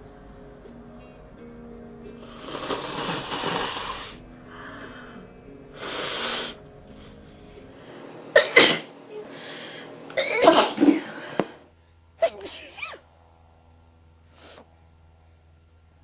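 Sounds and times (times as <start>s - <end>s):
breath through nose: 2.2s - 5.2s, 5.8s - 7.5s
woman sneezing: 8.4s - 8.9s, 10.2s - 11.1s, 12.2s - 13.0s.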